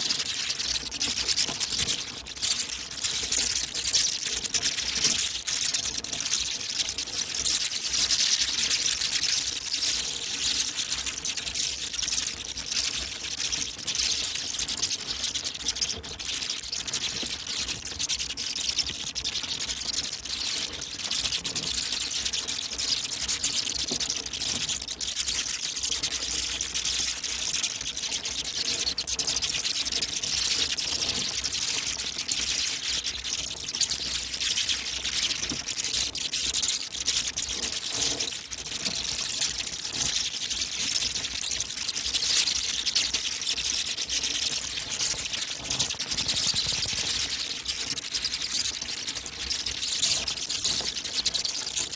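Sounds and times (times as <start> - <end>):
bats squeaking and chittering: 44.2 - 50.2.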